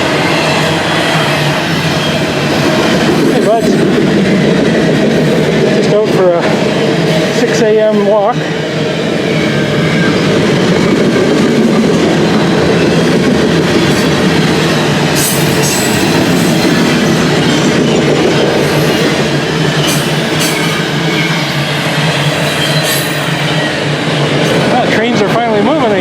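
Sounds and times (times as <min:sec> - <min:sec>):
train wheels rumbling on rails: 0:00.0 - 0:26.0
wheel squeals: 0:19.8 - 0:24.0.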